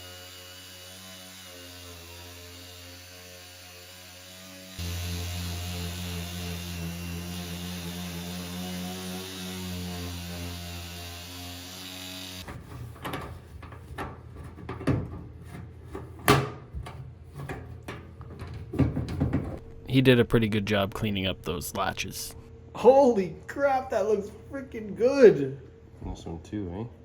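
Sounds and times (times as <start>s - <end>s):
steady low hum: 19.6s - 22.8s.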